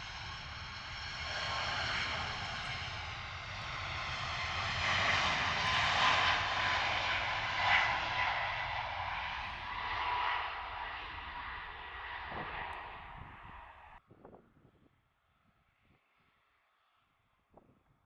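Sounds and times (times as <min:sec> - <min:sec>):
jet plane taking off: 0:00.0 - 0:14.0.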